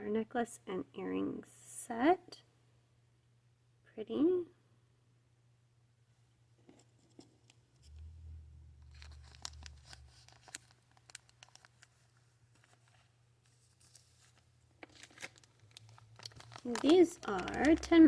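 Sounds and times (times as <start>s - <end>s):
bead packages rustling and clicking: 8.8s - 13.0s, 13.7s - 18.0s.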